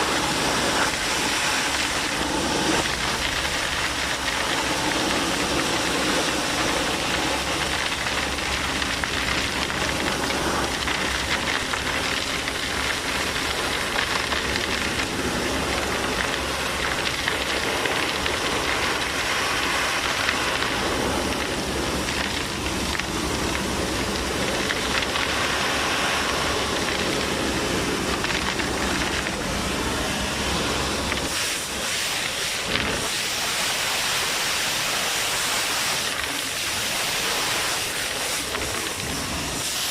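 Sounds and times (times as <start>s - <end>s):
low engine drone: 0.0s - 34.6s
suction air hissing: 29.9s - 39.9s.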